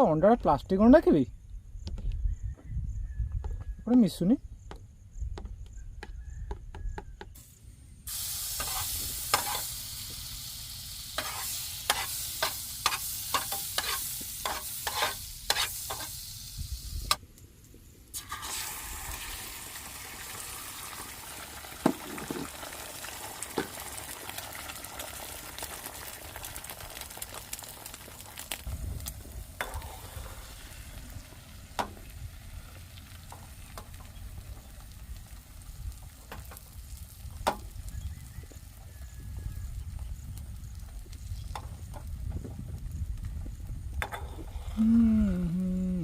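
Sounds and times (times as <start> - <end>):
eggs sizzling in a pan: 7.1 - 17.2, 18.1 - 45.2
spatula scraping a pan: 8.4 - 9.8, 11.2 - 16.2.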